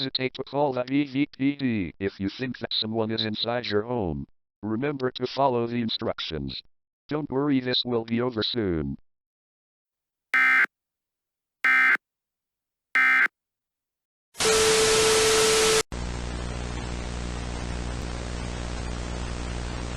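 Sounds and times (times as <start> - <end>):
digital data bursts: 10.4 - 10.7, 11.7 - 12.0, 13.0 - 13.3.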